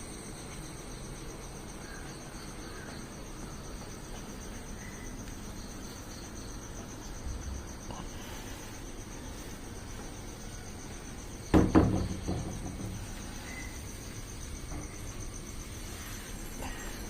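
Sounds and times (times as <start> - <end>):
loud knock with clatter: 11.5 - 13.3.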